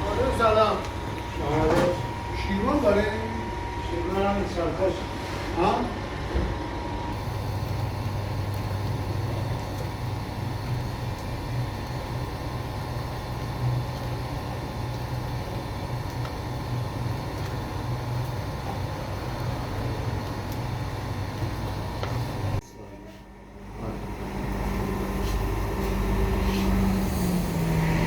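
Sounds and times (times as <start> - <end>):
machinery low rumble: 23.3 - 28.0.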